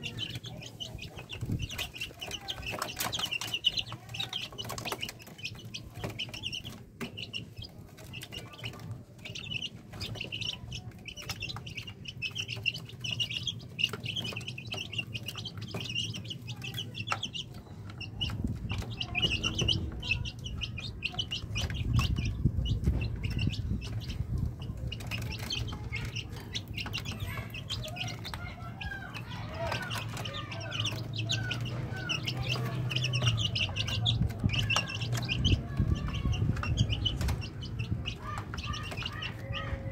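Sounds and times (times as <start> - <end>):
chicks peeping: 0.0 - 39.9
low rumble: 18.2 - 25.3.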